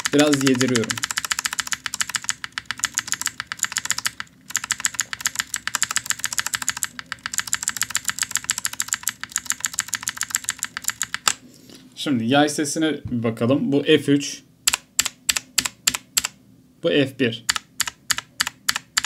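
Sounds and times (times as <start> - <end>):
mechanical keyboard switch clicks: 14.7 - 16.4.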